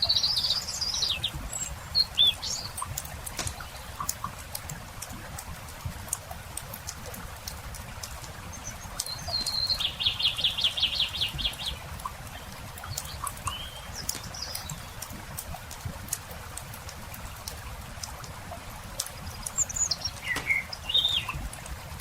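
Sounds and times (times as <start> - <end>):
songbird singing: 0.0 - 4.4, 8.1 - 15.3, 19.0 - 21.7
campfire crackling: 1.2 - 22.0
bird chirps: 12.4 - 15.0, 19.2 - 21.4.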